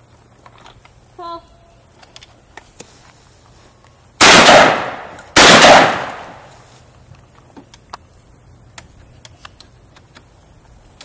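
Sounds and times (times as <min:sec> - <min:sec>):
shotgun shots echoing: 0:04.2 - 0:06.5.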